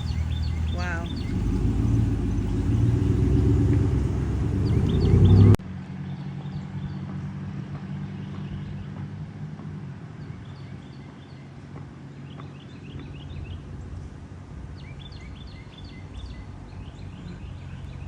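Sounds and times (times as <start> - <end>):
faint high chirps: 0.0 - 5.6
car engine and road rumble: 0.0 - 18.0.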